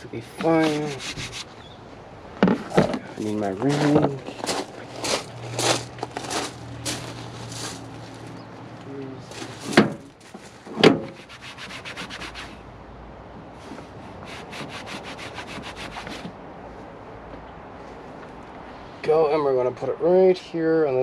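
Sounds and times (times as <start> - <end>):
scraping strokes on surface: 0.0 - 1.6, 9.3 - 12.6, 13.6 - 16.3.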